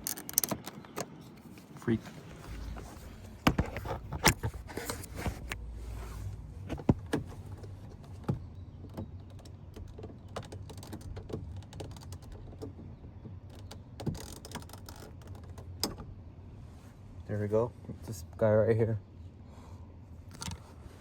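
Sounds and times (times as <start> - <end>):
plastic and metal parts clicking: 0.0 - 1.6
low steady hum: 0.0 - 9.7.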